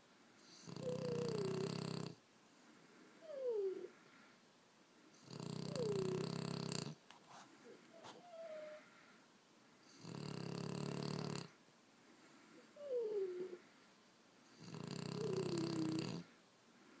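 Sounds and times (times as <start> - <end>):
dog snoring: 0.4 - 2.2, 5.1 - 7.0, 7.9 - 9.0, 9.8 - 11.6, 12.8 - 13.6, 14.5 - 16.4.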